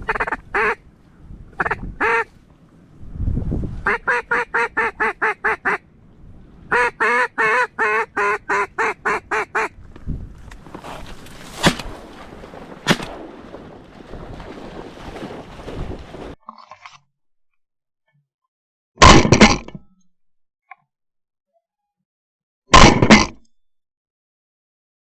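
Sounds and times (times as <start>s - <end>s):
mallard quacking: 0.0s - 0.8s, 6.7s - 9.7s
shotgun shots: 11.5s - 13.6s.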